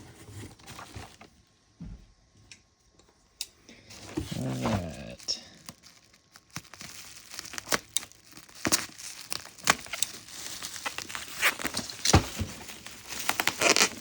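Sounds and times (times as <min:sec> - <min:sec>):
packing material crinkling: 0:03.8 - 0:14.0.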